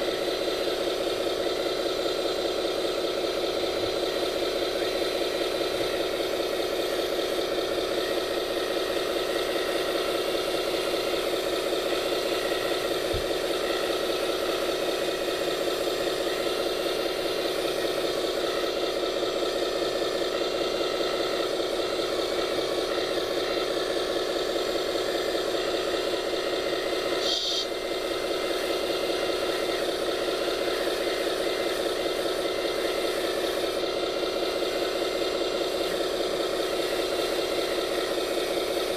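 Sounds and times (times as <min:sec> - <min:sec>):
machine mechanical hum and rattle: 0:00.0 - 0:38.9.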